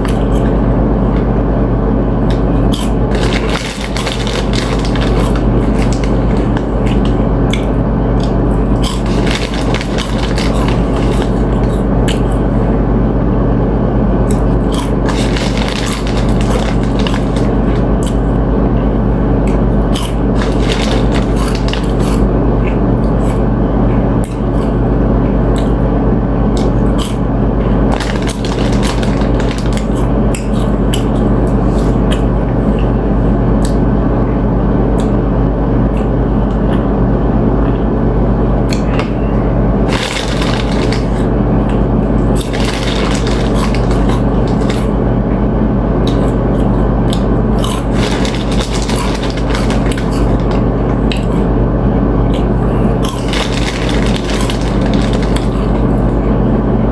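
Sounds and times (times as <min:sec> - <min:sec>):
loud low hum: 0:00.0 - 0:56.9
chips crunching and chewing: 0:02.3 - 0:12.6, 0:14.2 - 0:18.3, 0:19.5 - 0:23.4, 0:26.5 - 0:27.2, 0:27.9 - 0:32.3, 0:39.8 - 0:45.0, 0:46.0 - 0:51.5, 0:52.3 - 0:56.2.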